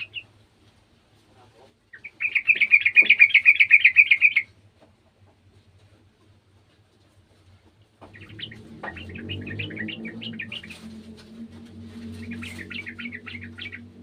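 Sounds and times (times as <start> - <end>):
bird chattering: 0.0 - 0.3, 1.9 - 4.5, 8.1 - 11.0, 12.1 - 14.0.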